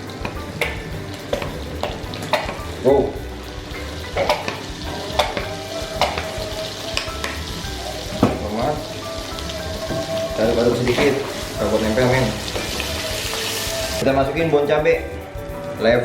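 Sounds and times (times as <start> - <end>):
sauce sizzling in a frying pan: 0.0 - 15.9.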